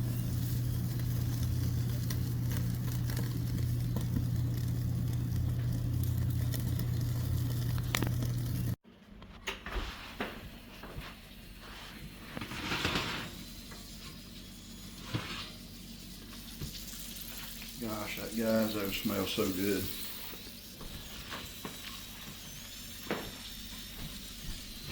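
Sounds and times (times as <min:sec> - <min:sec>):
meat sizzling over fire: 0:00.0 - 0:08.8, 0:11.2 - 0:24.9.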